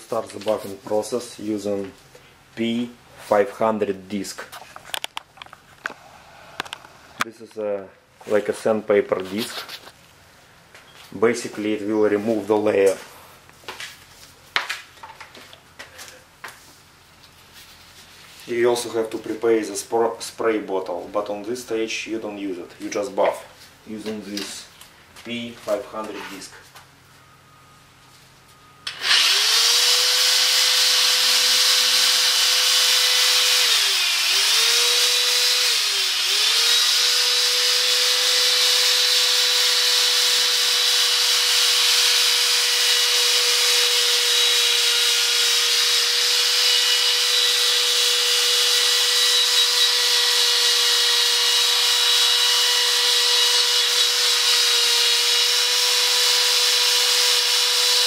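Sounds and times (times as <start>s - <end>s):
electric drill motor whine: 28.8s - 58.0s.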